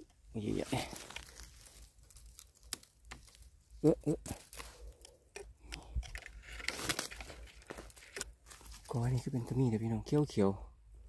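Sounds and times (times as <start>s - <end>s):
bamboo leaves rustling and crackling: 0.0s - 5.2s, 6.0s - 10.2s
bamboo stems snapping: 0.8s - 9.0s.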